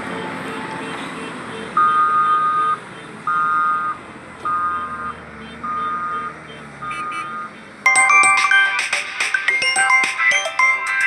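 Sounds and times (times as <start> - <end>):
diesel engine hum: 0.0 - 7.9.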